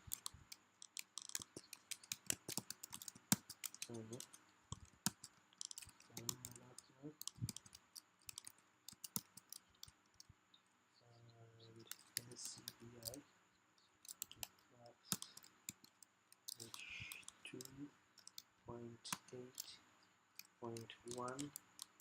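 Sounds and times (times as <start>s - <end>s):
keyboard typing clicks: 0.0s - 9.9s, 11.7s - 13.2s, 14.0s - 18.4s, 20.4s - 22.0s.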